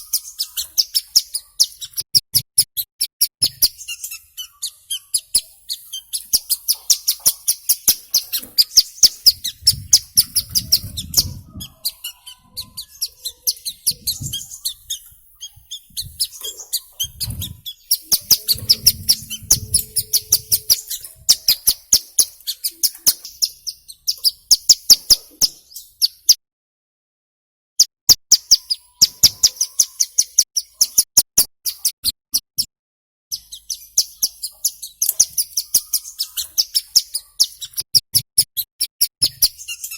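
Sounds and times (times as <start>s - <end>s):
bird singing sharp high notes: 3.5s - 24.7s.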